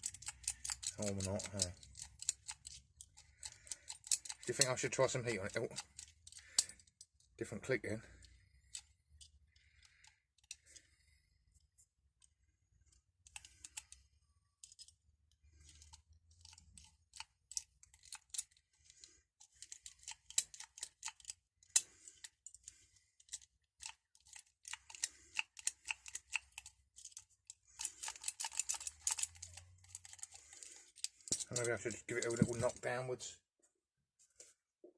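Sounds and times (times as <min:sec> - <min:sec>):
key rattling in padlock: 0:00.0 - 0:07.3, 0:14.6 - 0:15.0, 0:15.6 - 0:18.6, 0:19.4 - 0:22.4, 0:23.2 - 0:32.8.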